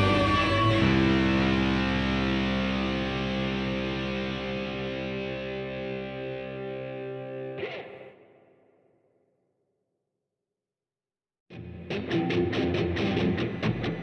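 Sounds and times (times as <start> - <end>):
guitar chord ringing: 0.0 - 8.5, 11.6 - 14.0.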